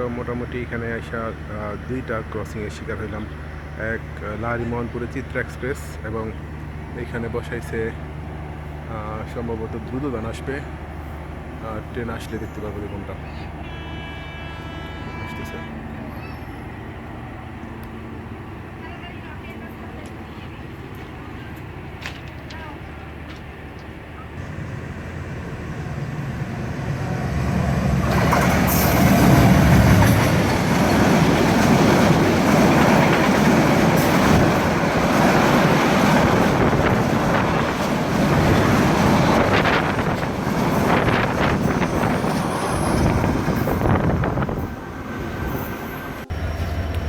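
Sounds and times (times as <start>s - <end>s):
train wheels clattering on rails: 25.2s - 44.5s.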